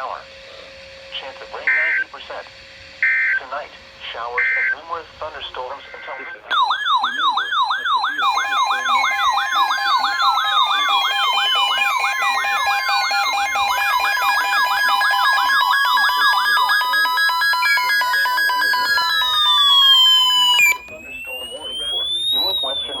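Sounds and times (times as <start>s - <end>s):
fast whooping siren-like tone: 4.2s - 5.0s, 5.6s - 23.0s
steady electronic alert tones: 5.7s - 23.0s.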